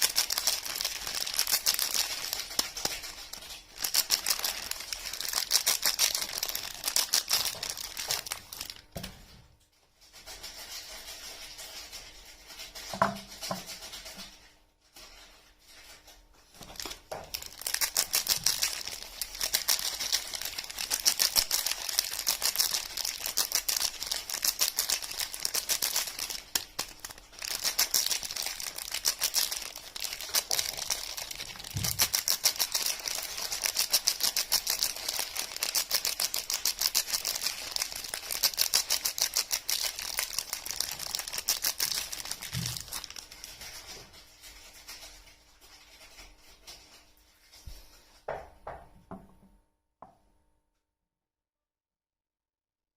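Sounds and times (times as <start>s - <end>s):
soap packaging crinkling and tearing: 0.0s - 9.0s, 16.6s - 43.8s.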